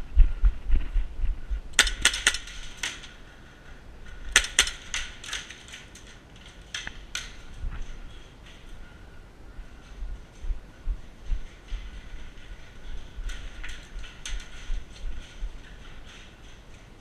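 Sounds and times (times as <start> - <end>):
low rumble of handling or wind: 0.0 - 17.0
airsoft gun shots: 1.8 - 3.1, 4.3 - 5.4.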